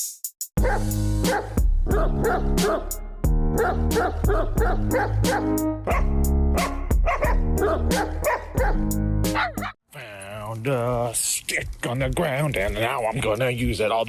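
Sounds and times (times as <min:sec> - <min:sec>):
upbeat music with driving beat: 0:00.0 - 0:09.6
dog yipping and barking: 0:00.6 - 0:02.9, 0:03.6 - 0:08.8, 0:09.4 - 0:09.8.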